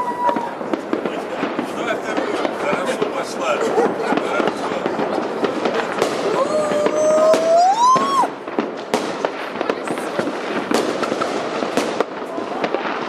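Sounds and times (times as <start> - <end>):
whistling firework tone: 0.0 - 0.8, 5.6 - 8.5
fireworks cracking and popping: 0.0 - 13.0.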